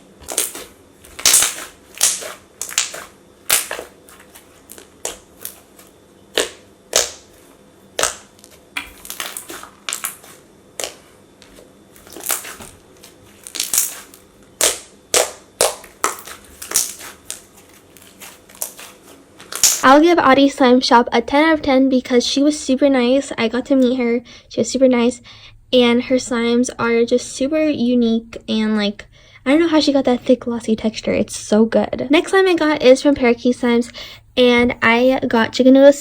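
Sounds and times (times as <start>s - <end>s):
slime clicking and popping: 0.2s - 3.9s, 6.4s - 7.3s, 8.0s - 10.2s, 13.4s - 17.4s, 19.5s - 19.9s.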